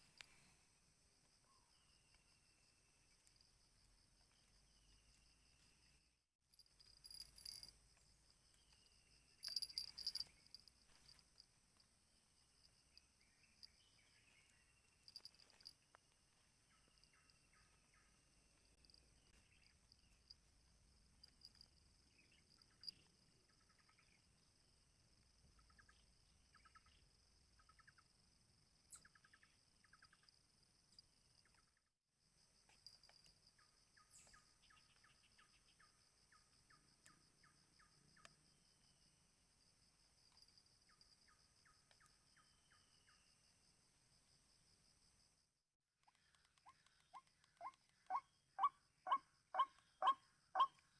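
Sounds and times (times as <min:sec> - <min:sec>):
faint insect chirps: 0:00.0 - 0:50.9
insect chorus trilling: 0:06.8 - 0:11.2.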